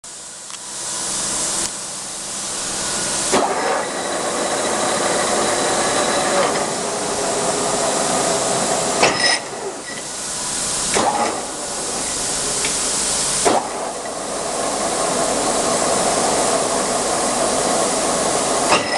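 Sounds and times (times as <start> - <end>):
lathe running with gear whine: 1.0 - 18.9
sharp mechanical clunk: 10.9 - 11.4.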